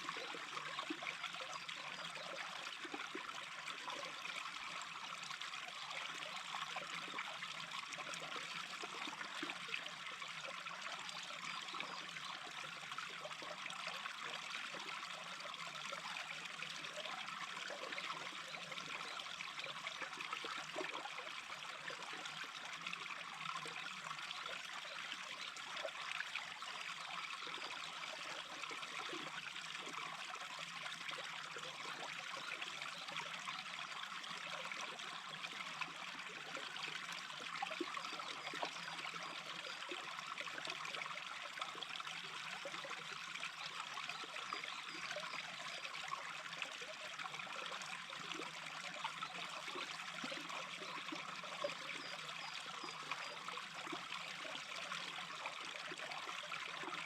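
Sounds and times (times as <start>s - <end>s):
brook babbling: 0.0s - 57.0s.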